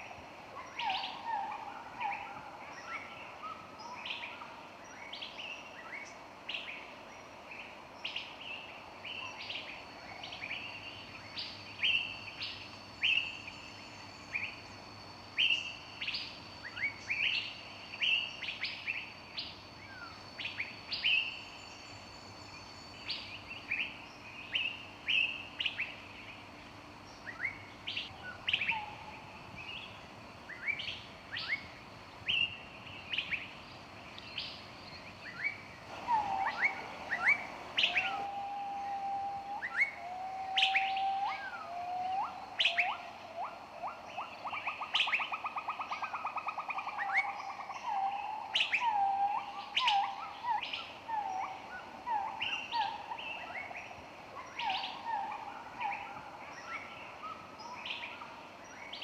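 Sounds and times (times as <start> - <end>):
faint background hum: 0.0 - 59.0
birds chirping and singing: 35.3 - 38.4.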